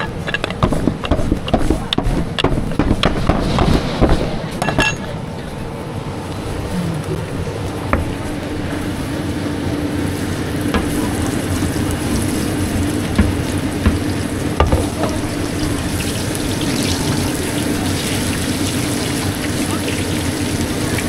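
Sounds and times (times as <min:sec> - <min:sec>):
sharp knocks: 0:00.0 - 0:05.1, 0:07.9 - 0:08.4, 0:13.0 - 0:15.4
low hum: 0:00.0 - 0:21.0
food sizzling in oil: 0:07.4 - 0:21.0.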